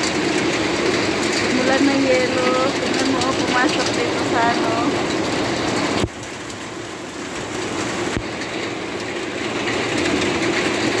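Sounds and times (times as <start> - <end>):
hail clattering: 0.0 - 11.0.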